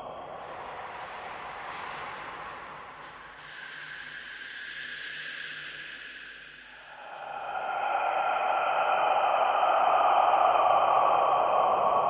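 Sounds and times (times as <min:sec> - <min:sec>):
whispered hissing breathing: 0:06.7 - 0:12.0.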